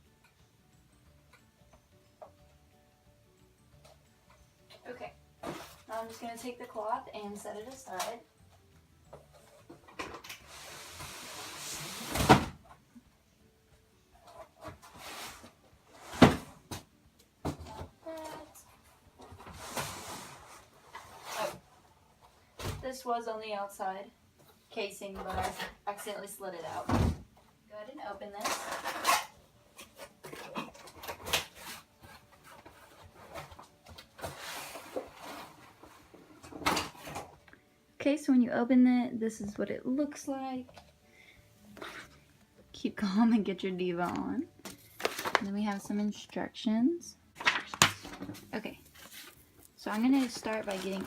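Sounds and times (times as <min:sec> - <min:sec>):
box knocks and scrapes: 0:05.4 - 0:06.0, 0:14.4 - 0:16.9
packaging rustling: 0:44.7 - 0:45.5, 0:47.4 - 0:51.0.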